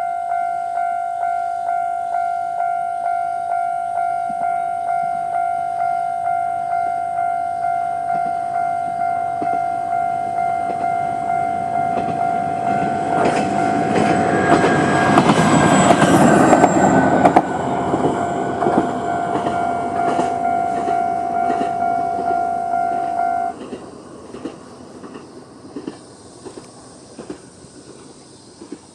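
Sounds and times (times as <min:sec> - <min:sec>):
level crossing alarm ringing: 0:00.0 - 0:23.6
diesel railcar engine: 0:00.0 - 0:28.9
train wheel clicks: 0:09.3 - 0:28.9.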